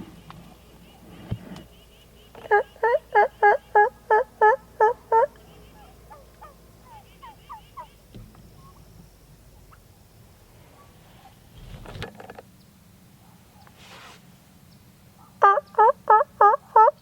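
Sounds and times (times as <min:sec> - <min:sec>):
turkey gobbling: 0:02.4 - 0:08.0, 0:15.4 - 0:17.0
faint short turkey calls: 0:02.5 - 0:08.0.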